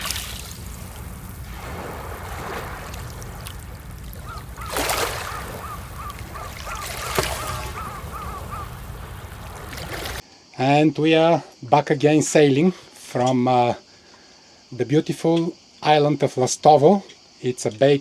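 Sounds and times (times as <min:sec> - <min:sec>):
bird calling: 0:00.0 - 0:10.2
water: 0:00.0 - 0:10.2
wind: 0:00.0 - 0:18.0.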